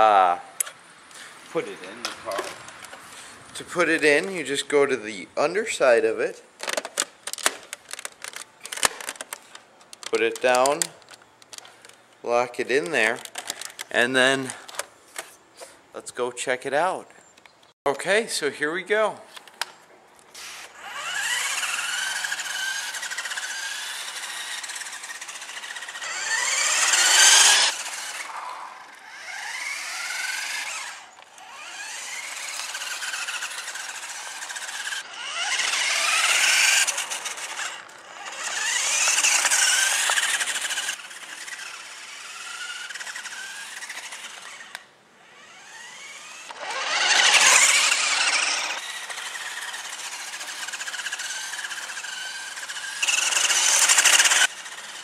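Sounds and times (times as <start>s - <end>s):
toy truck motor whining: 20.3s - 55.0s.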